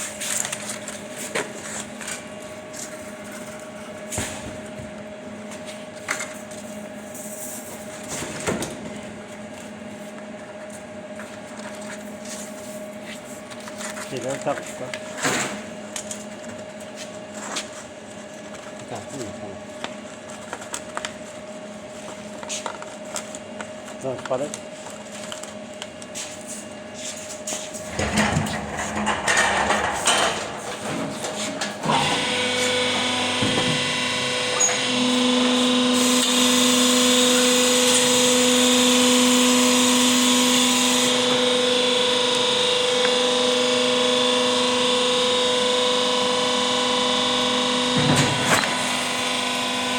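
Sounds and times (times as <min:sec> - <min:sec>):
machine parts knocking and scraping: 0:27.9 - 0:31.7
baling press humming: 0:27.9 - 0:35.9
motor humming: 0:27.9 - 0:49.9.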